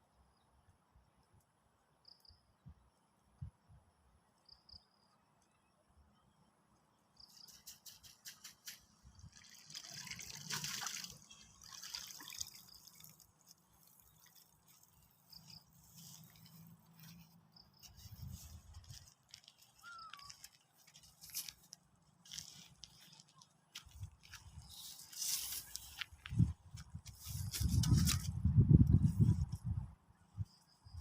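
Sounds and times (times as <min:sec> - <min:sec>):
water dripping and splashing: 0:08.3 - 0:15.5.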